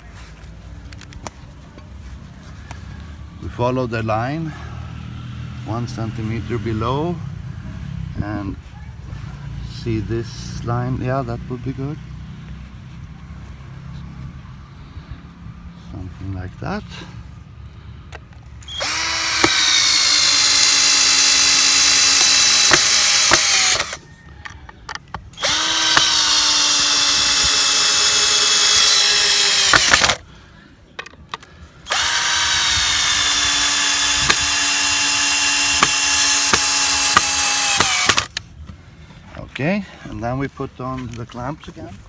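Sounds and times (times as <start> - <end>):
electric power drill running: 18.6 - 24.0, 25.4 - 30.2, 31.9 - 38.4.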